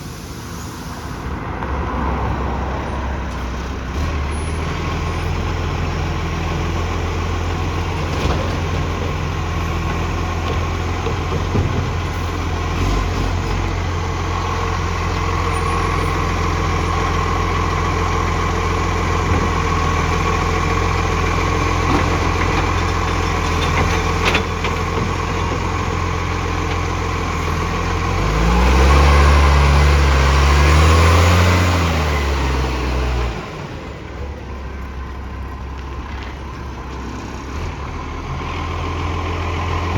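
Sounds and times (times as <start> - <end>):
diesel truck engine idling and revving: 0.0 - 39.9.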